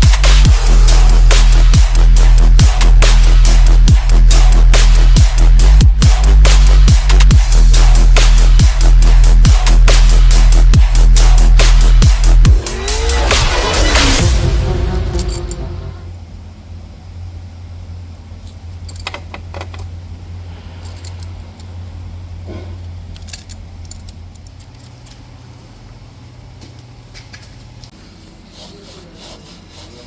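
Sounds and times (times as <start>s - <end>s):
low steady hum: 12.3s - 30.0s
light metallic clinks and jingles: 20.8s - 21.7s.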